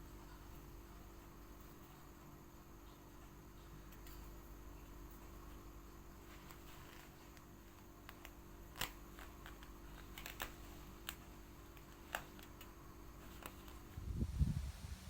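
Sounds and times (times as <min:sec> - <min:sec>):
steady low hum: 0:00.0 - 0:15.0
short low rumble: 0:14.0 - 0:15.0.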